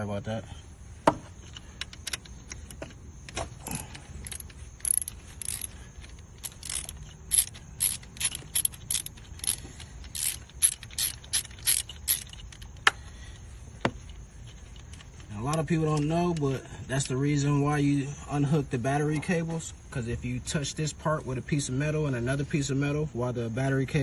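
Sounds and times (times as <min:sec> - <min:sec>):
hand ratchet clicking: 0:03.7 - 0:13.0, 0:14.5 - 0:17.4.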